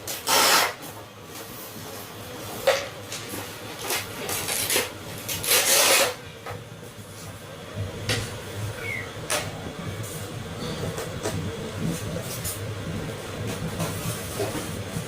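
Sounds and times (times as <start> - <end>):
packaging scraping rub: 0.1 - 0.8, 3.8 - 6.2.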